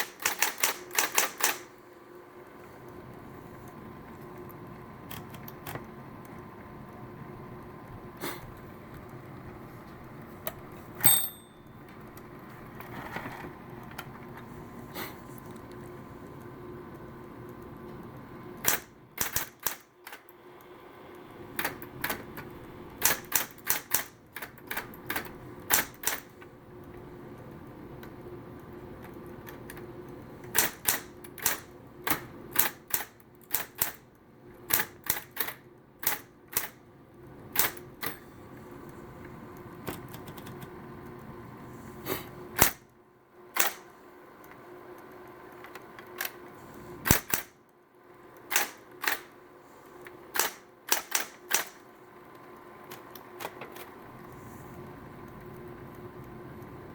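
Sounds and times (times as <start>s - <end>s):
typewriter key clacks: 0.0s - 1.7s, 23.0s - 26.3s, 30.5s - 34.0s, 50.4s - 51.8s
typewriter motor hum: 0.0s - 1.8s, 13.7s - 38.2s, 43.5s - 44.0s, 44.9s - 56.9s.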